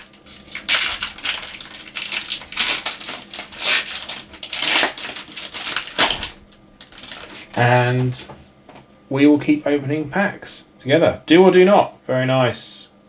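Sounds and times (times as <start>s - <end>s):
wrapper crinkling: 0.0s - 8.0s.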